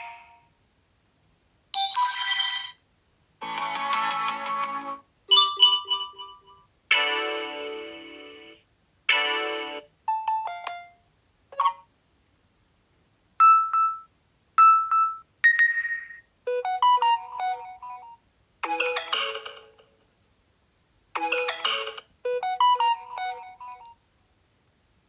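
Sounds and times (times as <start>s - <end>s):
phone notification chimes: 22.3s - 24.0s.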